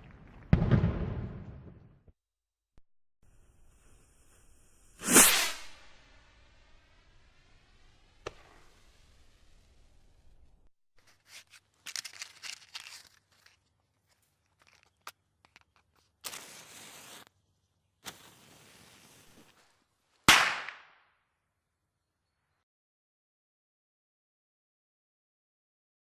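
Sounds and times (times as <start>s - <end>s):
fireworks crackling pops: 0.0s - 1.9s, 3.3s - 13.6s, 14.2s - 17.3s, 18.0s - 21.0s
loud firework bang: 0.5s - 1.9s
hissing crackle: 3.3s - 17.3s, 18.0s - 19.9s.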